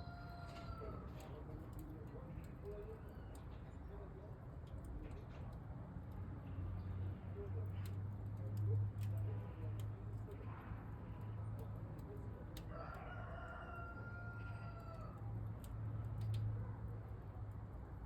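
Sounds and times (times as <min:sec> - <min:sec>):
rooster crowing: 0:00.0 - 0:01.1, 0:12.7 - 0:15.2.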